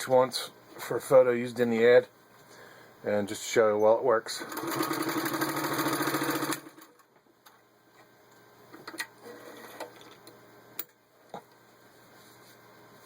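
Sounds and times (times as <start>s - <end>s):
sewing machine stitching: 4.4s - 7.0s.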